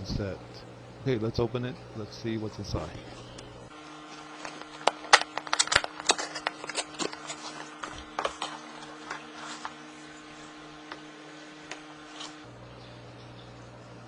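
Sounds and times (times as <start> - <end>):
cardboard packaging clicks and crackles: 3.4 - 12.5.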